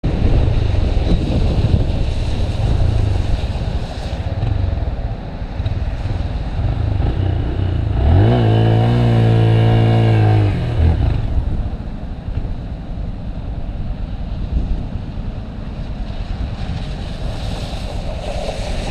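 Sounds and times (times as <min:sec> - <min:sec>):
rushing wind: 0:00.0 - 0:18.9
motorcycle engine revving: 0:04.2 - 0:12.0.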